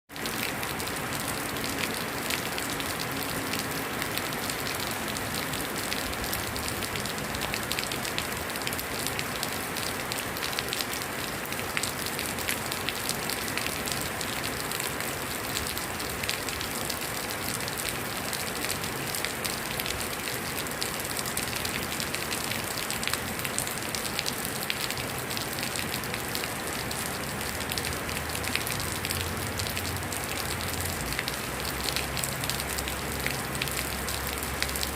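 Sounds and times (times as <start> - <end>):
heavy rain on a metal roof: 0.1 - 34.9.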